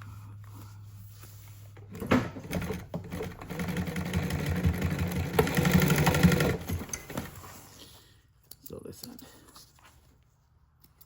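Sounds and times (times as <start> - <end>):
sewing machine stitching: 1.9 - 7.4.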